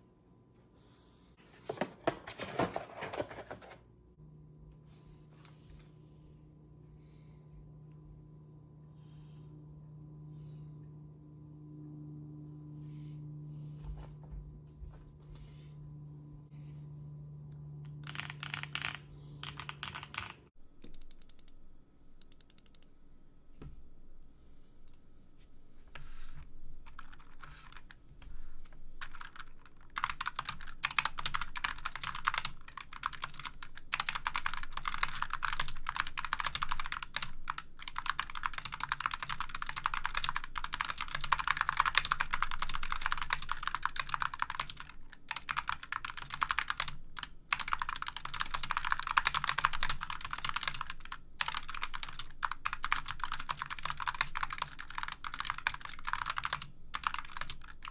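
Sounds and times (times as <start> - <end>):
typing on a keyboard: 18.0 - 21.6, 26.8 - 27.9, 29.0 - 57.9.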